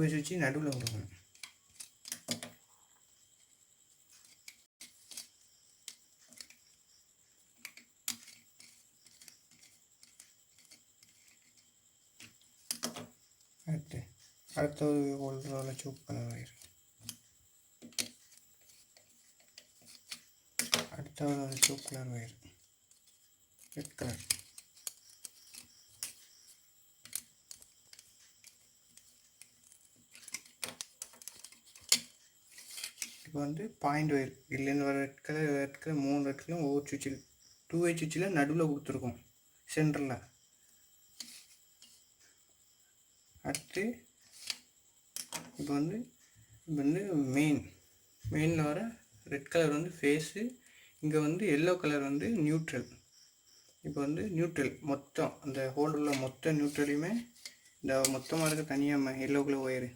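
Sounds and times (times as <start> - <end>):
small clicks of wires handled: 0.7 - 2.6, 4.1 - 6.7, 7.6 - 13.1, 15.5 - 22.0, 22.9 - 26.3, 27.0 - 33.3, 44.4 - 45.7, 56.0 - 58.8.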